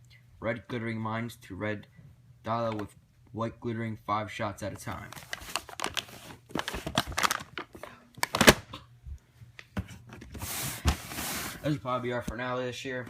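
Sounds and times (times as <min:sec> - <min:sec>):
cardboard boxes rustling and scraping: 0:09.8 - 0:11.9.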